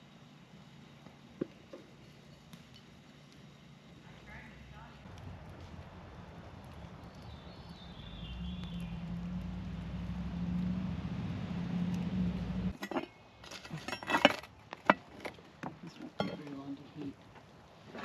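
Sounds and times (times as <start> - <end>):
low rumble: 4.6 - 12.8
dishes and utensils clinking: 12.8 - 15.0.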